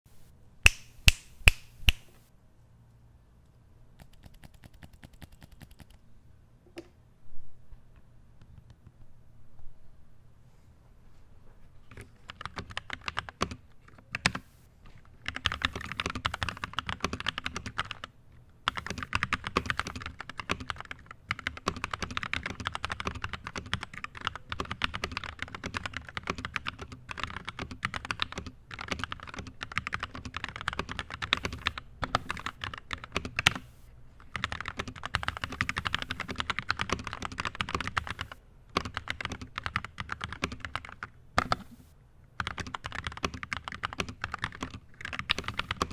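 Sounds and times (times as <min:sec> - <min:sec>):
fast typing on mechanical keyboard: 0:04.0 - 0:06.0, 0:12.2 - 0:14.4, 0:15.2 - 0:18.1, 0:18.7 - 0:41.7, 0:42.4 - 0:45.9.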